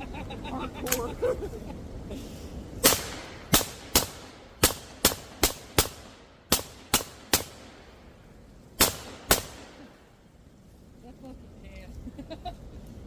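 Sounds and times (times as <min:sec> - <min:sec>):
suppressed gunshots: 0:02.8 - 0:07.8, 0:08.8 - 0:09.9.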